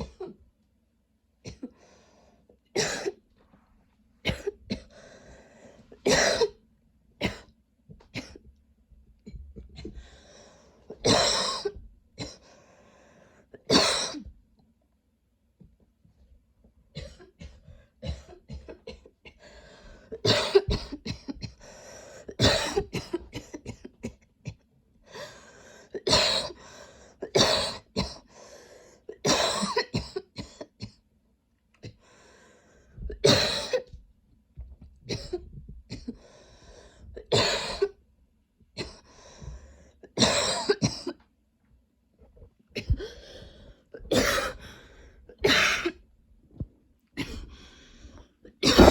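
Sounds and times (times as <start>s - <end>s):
woman coughing hard: 0.0s - 0.4s, 2.8s - 3.2s, 4.2s - 4.9s, 6.0s - 6.6s, 7.2s - 7.5s, 11.0s - 12.4s, 13.7s - 14.3s, 17.0s - 19.1s, 20.2s - 21.6s, 22.4s - 24.6s, 26.0s - 26.6s, 27.2s - 28.2s, 29.2s - 31.0s, 33.1s - 33.9s, 35.1s - 36.2s, 37.3s - 38.0s, 40.1s - 41.2s, 42.8s - 43.3s, 44.0s - 44.8s, 45.4s - 46.0s, 47.2s - 47.6s, 48.6s - 48.9s
woman breathing: 1.8s - 2.5s, 4.9s - 6.0s, 9.9s - 11.0s, 12.4s - 13.5s, 19.4s - 20.2s, 21.6s - 22.4s, 25.0s - 26.0s, 26.6s - 27.2s, 28.3s - 29.1s, 32.0s - 33.2s, 36.1s - 37.2s, 39.0s - 40.0s, 43.0s - 45.4s, 47.3s - 48.9s.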